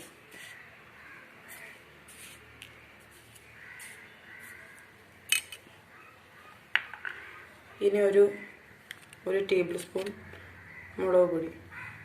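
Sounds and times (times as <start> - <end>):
faint harsh animal calls: 10.2 - 11.1, 11.7 - 12.0.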